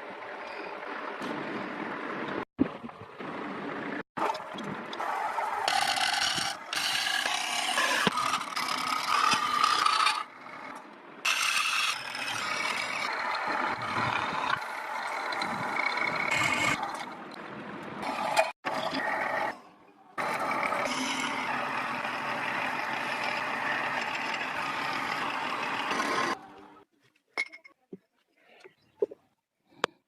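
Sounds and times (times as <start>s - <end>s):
woodworking tools scraping: 4.2s - 17.1s, 20.2s - 26.5s.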